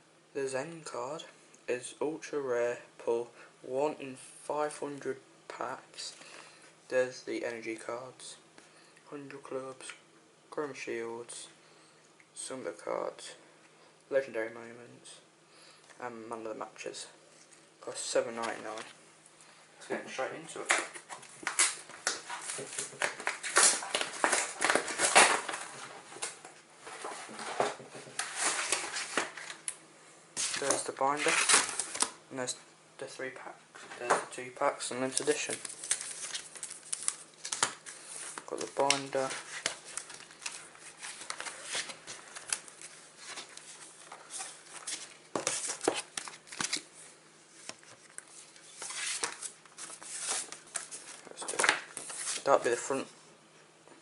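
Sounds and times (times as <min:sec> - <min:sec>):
packaging crinkling and rustling: 0:20.8 - 0:29.7, 0:30.4 - 0:32.2, 0:35.2 - 0:47.0.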